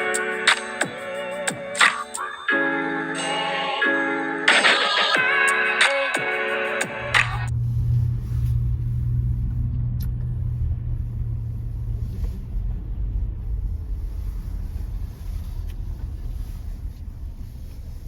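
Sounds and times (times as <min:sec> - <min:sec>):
car engine and road rumble: 0:07.0 - 0:18.0.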